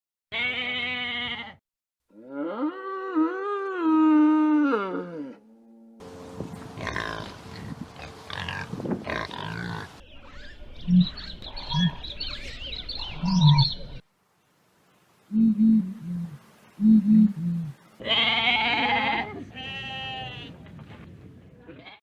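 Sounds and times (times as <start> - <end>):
low grunting animal calls: 6.8 - 14.0, 15.3 - 19.4
high chirping calls: 9.9 - 14.0.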